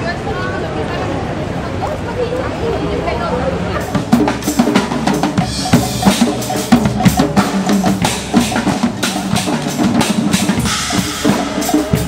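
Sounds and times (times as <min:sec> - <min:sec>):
drums playing steady beat: 0:03.8 - 0:12.0.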